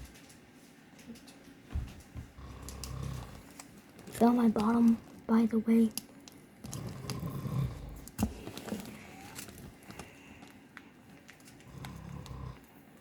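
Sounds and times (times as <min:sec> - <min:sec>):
man snoring: 0:02.4 - 0:03.4, 0:06.8 - 0:08.0, 0:11.7 - 0:12.6.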